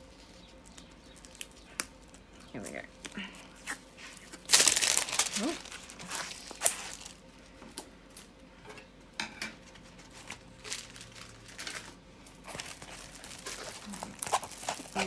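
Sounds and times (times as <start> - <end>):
plastic-covered canvas rustling: 3.4 - 7.6, 9.8 - 15.0.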